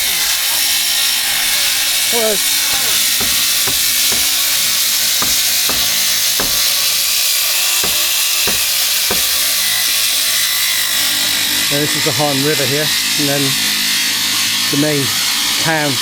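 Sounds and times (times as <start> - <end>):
regular knocks: 2.4 - 10.6.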